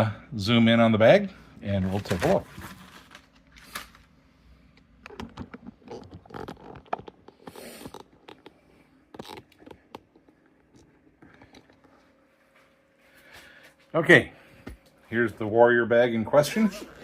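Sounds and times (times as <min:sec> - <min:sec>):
handling clicks and rustles: 0:04.8 - 0:12.0.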